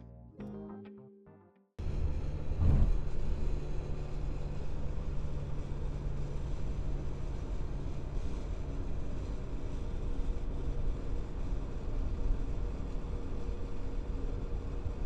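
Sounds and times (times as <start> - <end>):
car road rumble: 1.8 - 8.4.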